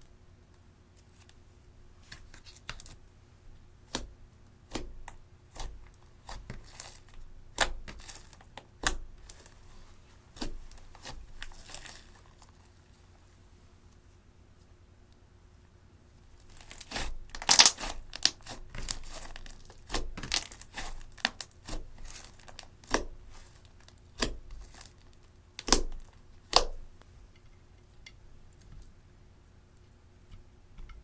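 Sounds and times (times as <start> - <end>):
slime crackling and snapping: 10.4 - 12.5, 16.4 - 26.9.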